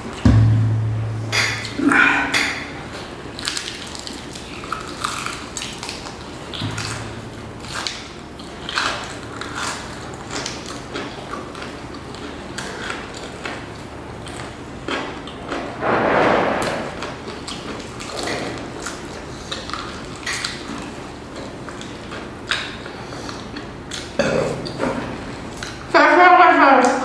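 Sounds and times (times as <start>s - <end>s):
chewing crispy fried chicken: 7.8s - 15.4s, 19.4s - 24.8s.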